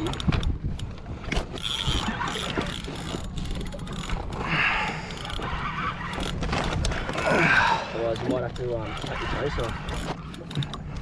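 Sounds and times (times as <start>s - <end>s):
fishing reel clicking: 1.6s - 4.4s, 5.0s - 5.5s, 8.1s - 10.9s.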